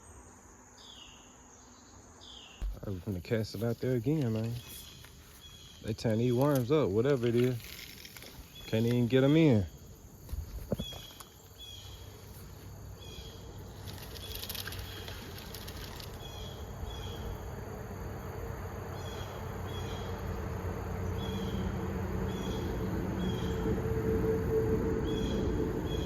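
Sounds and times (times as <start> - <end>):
small bird chirping: 13.0 - 17.4.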